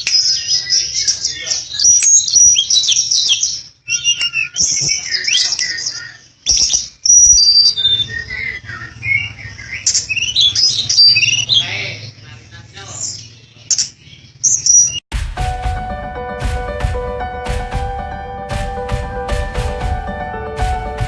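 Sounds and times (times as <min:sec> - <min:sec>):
bird chirping and twittering: 0:00.0 - 0:15.0.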